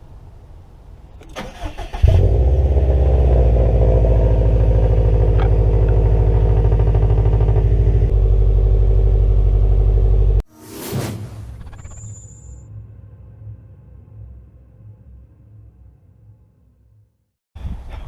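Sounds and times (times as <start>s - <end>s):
car engine running: 2.3s - 10.4s.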